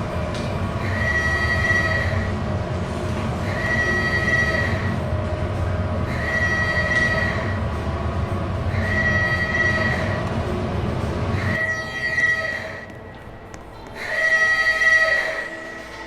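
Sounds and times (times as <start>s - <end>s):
steady low rumble: 4.2s - 11.6s.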